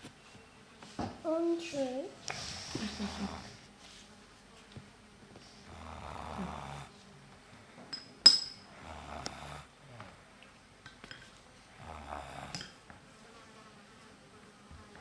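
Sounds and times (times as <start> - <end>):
boy snoring: 2.4 - 3.6, 5.7 - 6.9, 8.7 - 10.0, 11.8 - 12.7
sharp clink: 7.9 - 8.6.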